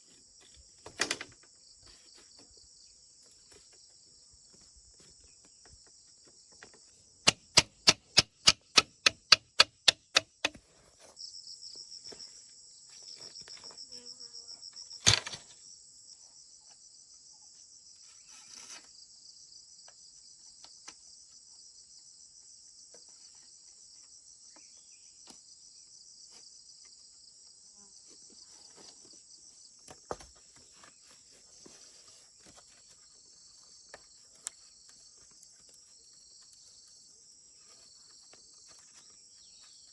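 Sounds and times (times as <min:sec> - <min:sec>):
insects chirring: 0:00.0 - 0:17.1, 0:17.8 - 0:39.9
sharp ringing knocks: 0:07.3 - 0:10.6.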